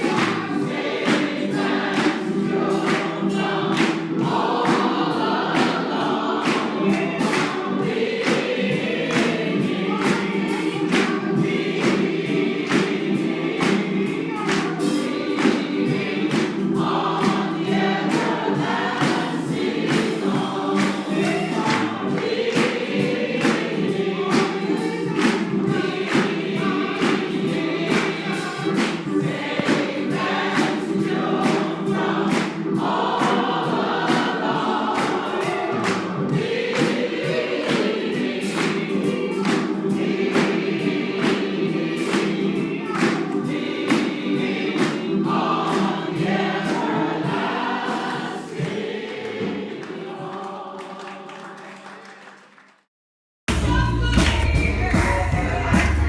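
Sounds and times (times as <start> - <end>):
steady beat of sharp strokes: 0.0 - 50.6
congregation singing gospel song: 0.0 - 52.6, 53.5 - 56.0.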